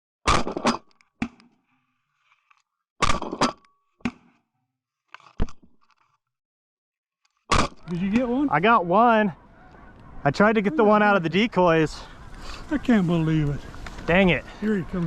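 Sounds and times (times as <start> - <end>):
shotgun shots: 7.5 - 7.8.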